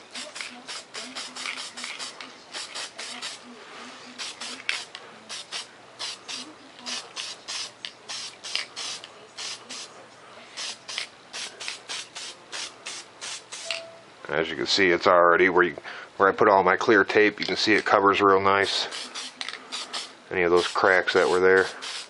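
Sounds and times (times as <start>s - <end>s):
spray can hissing in bursts: 0.0s - 3.5s, 4.1s - 9.9s, 10.6s - 13.8s, 18.6s - 22.0s.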